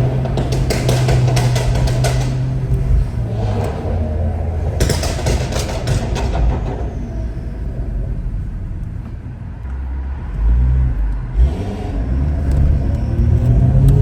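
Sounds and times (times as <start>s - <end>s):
exhaust pop: 0.0s - 9.9s
car engine rumbling: 0.0s - 14.0s.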